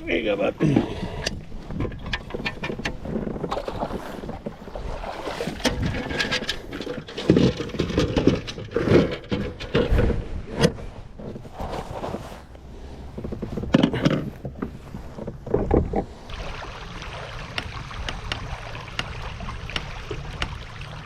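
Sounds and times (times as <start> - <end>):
water around hull: 0.0 - 21.0
clicks and knocks on plastic kayak: 13.1 - 16.2.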